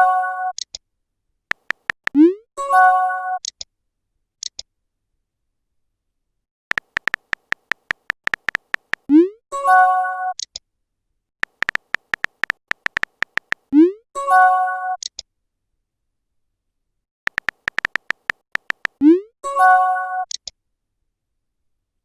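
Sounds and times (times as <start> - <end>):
electronic typing clicks: 1.5 - 2.3, 6.7 - 9.1, 11.4 - 13.8, 17.3 - 19.2.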